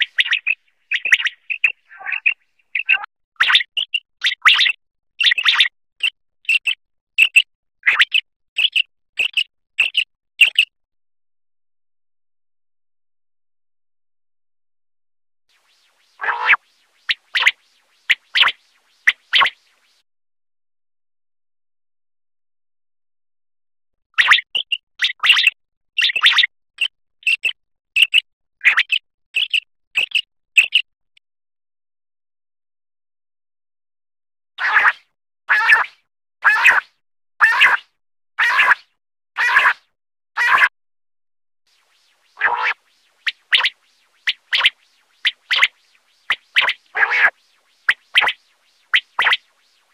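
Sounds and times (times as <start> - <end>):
quail calling: 0.0 - 3.9, 16.2 - 19.6, 38.4 - 38.8, 39.4 - 39.8, 40.4 - 40.7, 42.3 - 49.9.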